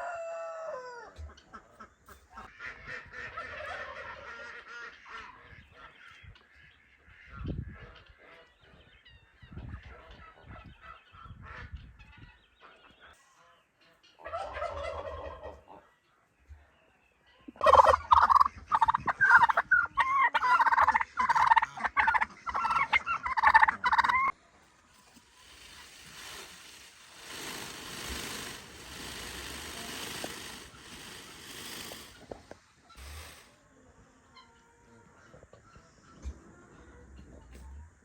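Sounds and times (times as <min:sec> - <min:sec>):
farm fowl calling: 0:17.6 - 0:24.4
faint steady rushing noise: 0:25.0 - 0:32.4.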